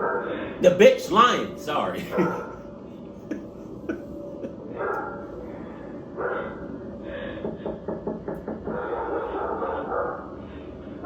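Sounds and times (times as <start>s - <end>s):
dog barking indoors: 0.0s - 0.6s, 2.0s - 2.7s, 4.7s - 6.8s, 8.5s - 11.0s.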